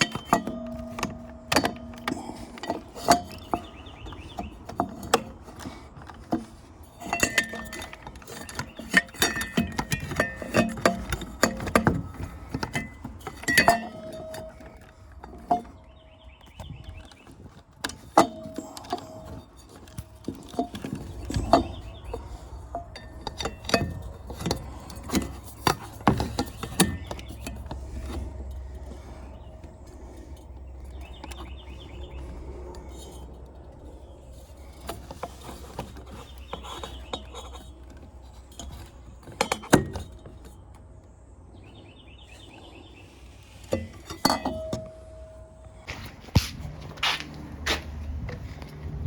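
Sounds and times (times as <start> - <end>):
metal parts rattling: 0.0 - 40.8, 43.3 - 45.9
metal parts and tools clinking: 0.0 - 40.9, 42.3 - 49.0
steady low hum: 18.2 - 49.0.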